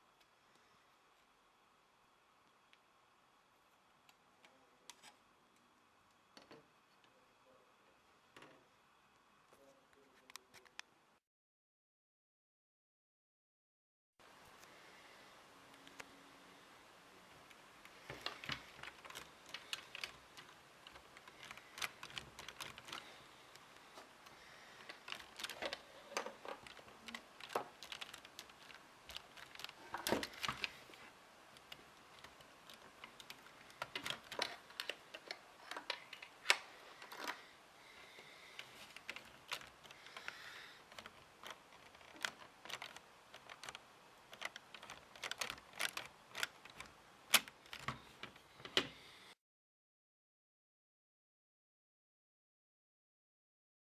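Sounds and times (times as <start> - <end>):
plastic lego parts clicking: 17.4 - 31.0, 31.6 - 37.4, 38.6 - 48.9
lego parts snapping: 38.9 - 48.0.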